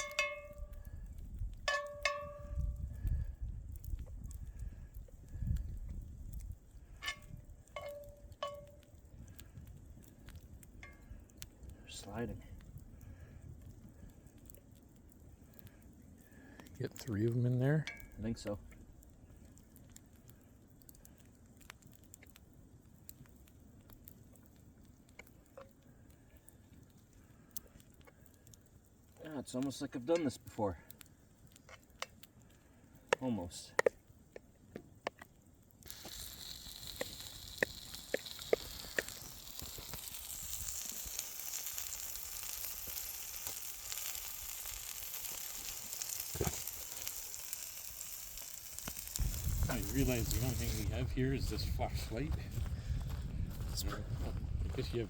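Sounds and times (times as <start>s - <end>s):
fire crackling and popping: 0.0s - 55.0s
patties sizzling in a pan: 35.8s - 51.8s
low rumble: 49.1s - 55.0s.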